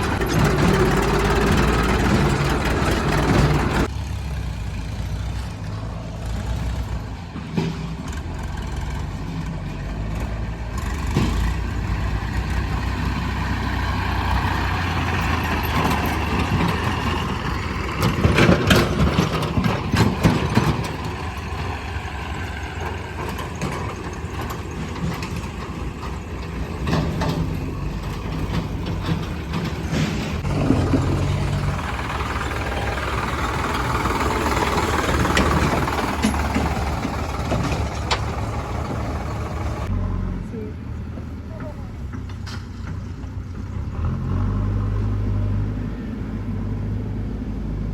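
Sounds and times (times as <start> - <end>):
heavy diesel engine running: 0.0 - 47.9
sharp clattering knocks: 15.2 - 39.9.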